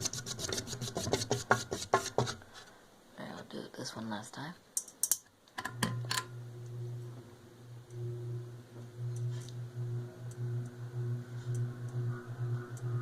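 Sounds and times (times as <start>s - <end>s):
ceiling fan motor buzzing: 5.6s - 13.0s.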